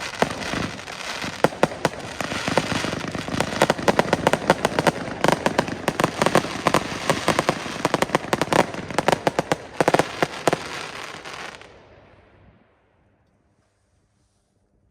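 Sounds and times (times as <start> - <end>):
firework crackle: 0.0 - 11.8.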